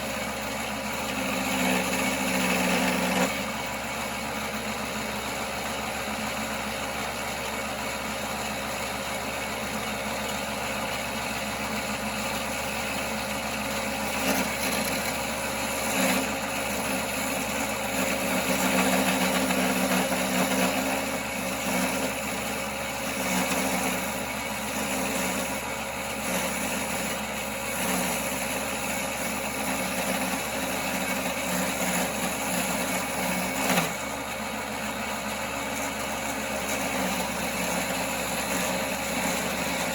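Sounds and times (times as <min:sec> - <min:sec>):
turning tool cutting wood: 0:00.0 - 0:39.9
wood lathe running: 0:00.0 - 0:39.9.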